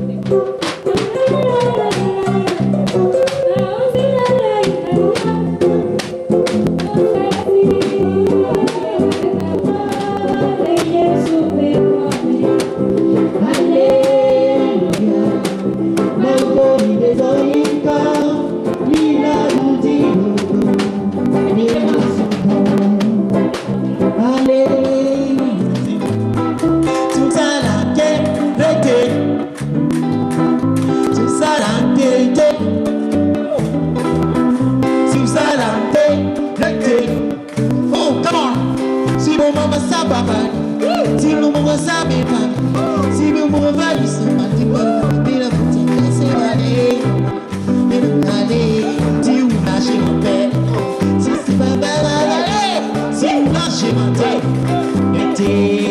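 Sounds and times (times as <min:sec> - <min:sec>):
plucked guitar: 0:00.0 - 0:55.9
rhythmic bass: 0:00.0 - 0:55.9
steady beat of sharp strikes: 0:00.2 - 0:44.0
voices singing together: 0:00.3 - 0:26.3, 0:39.2 - 0:55.9.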